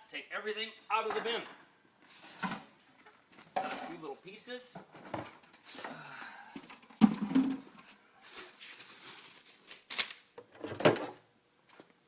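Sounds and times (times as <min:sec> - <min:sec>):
rustling and scraping: 0:06.6 - 0:09.9.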